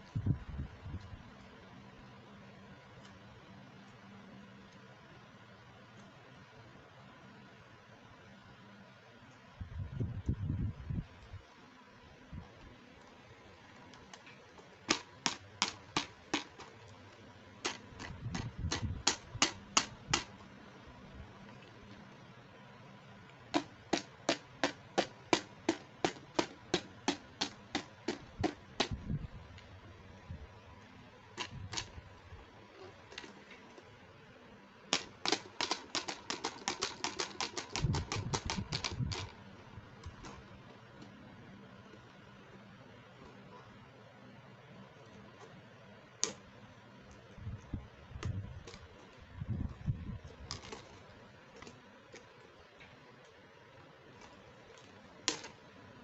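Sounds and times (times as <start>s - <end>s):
soft handling noise: 31.3s - 34.2s, 44.8s - 55.9s
plastic toy pieces clicking: 34.9s - 39.4s.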